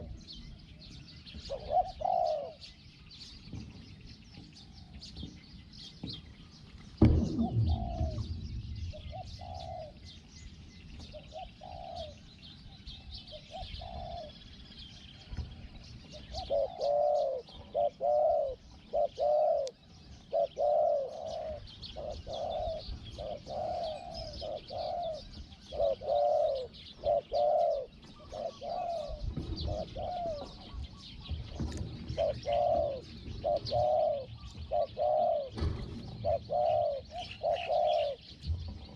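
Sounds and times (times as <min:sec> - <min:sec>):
small birds chirping: 0:00.0 - 0:38.9
doves cooing: 0:01.3 - 0:03.6, 0:08.9 - 0:10.2, 0:11.0 - 0:38.9
sudden thump: 0:07.0 - 0:09.8.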